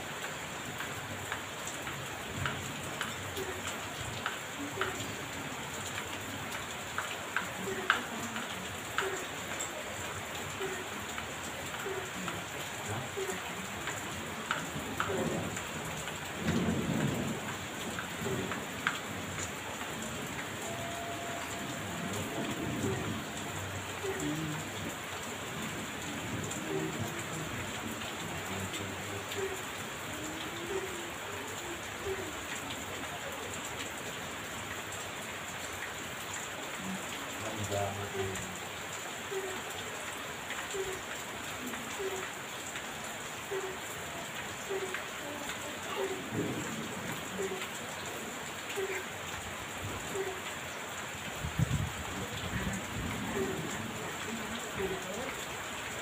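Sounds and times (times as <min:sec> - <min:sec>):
heavy rain falling: 0:00.0 - 0:56.0
low rolls of thunder: 0:46.3 - 0:47.2.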